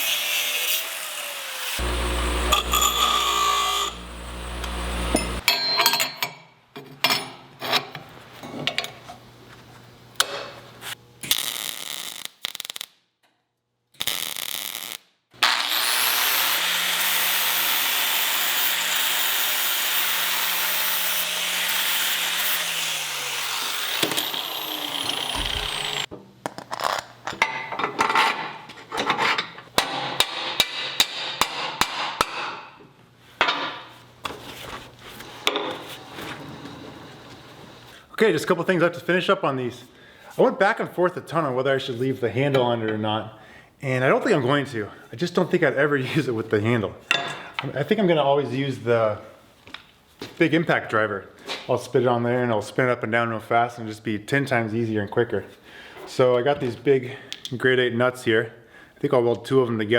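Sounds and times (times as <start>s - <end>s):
power tool running: 0.2s - 5.4s, 15.4s - 26.1s.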